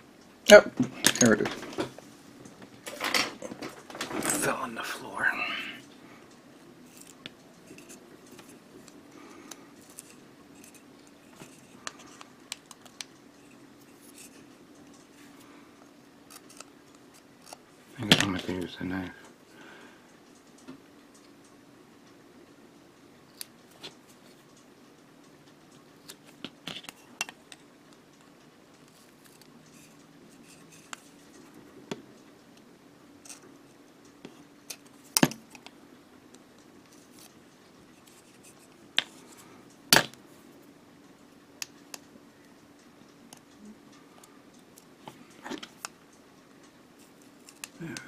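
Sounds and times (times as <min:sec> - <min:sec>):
knife clicks and scrapes: 0:06.9 - 0:14.4, 0:16.3 - 0:17.6.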